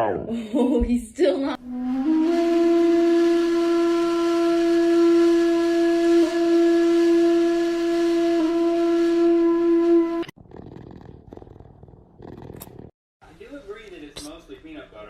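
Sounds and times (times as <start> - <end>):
long held note: 1.6 - 10.3.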